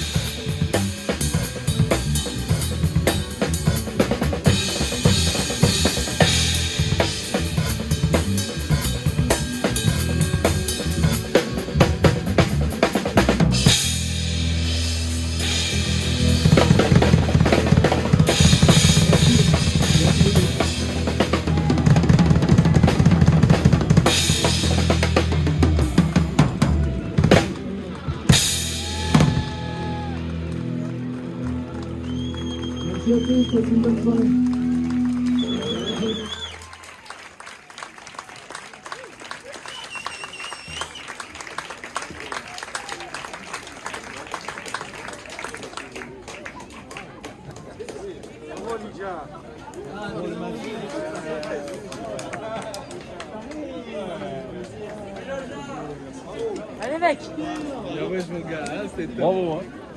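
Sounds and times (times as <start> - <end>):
jazz-funk band playing: 0.0 - 32.7
snare and bass drum fills: 16.2 - 27.6.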